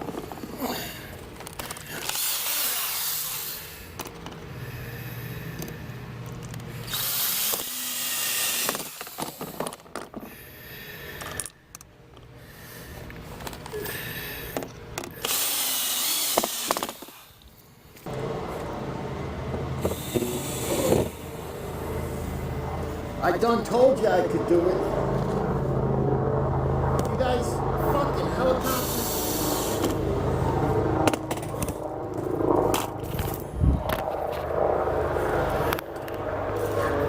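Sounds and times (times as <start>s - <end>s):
clicks and knocks of parts handled: 0.0s - 2.5s, 3.9s - 4.5s, 5.5s - 6.7s, 8.5s - 10.3s, 11.1s - 12.3s, 13.0s - 13.8s, 14.5s - 15.4s
cordless power driver running: 0.0s - 11.4s, 13.0s - 22.5s.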